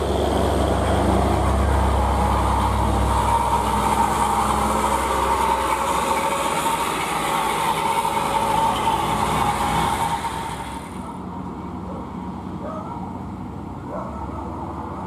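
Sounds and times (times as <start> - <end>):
high engine whine: 0.0 - 15.0
truck diesel engine labouring: 0.0 - 15.0.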